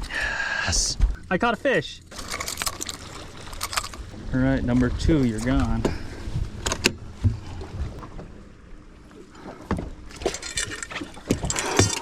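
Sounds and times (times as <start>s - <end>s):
water splashing: 2.1s - 8.4s.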